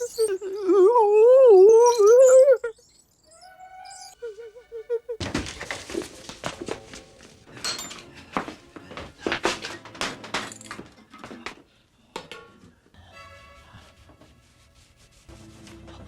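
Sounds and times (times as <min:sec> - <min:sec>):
knocks and clatters: 0:09.0 - 0:11.6.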